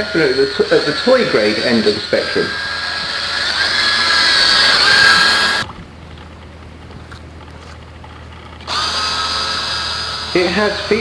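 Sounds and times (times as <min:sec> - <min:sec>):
electric motors whining: 0:00.0 - 0:05.7, 0:08.6 - 0:11.0.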